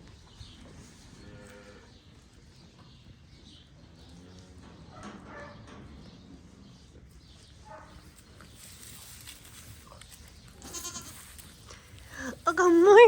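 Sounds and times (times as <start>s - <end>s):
calves bawling: 9.2s - 13.0s.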